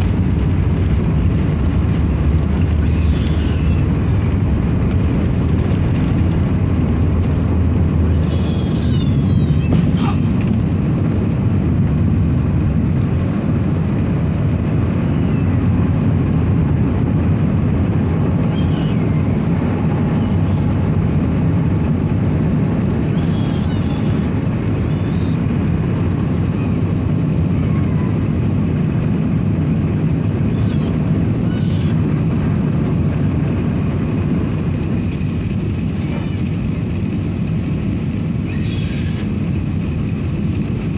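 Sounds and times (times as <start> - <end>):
airliner cabin engine rumble: 0.0 - 40.9.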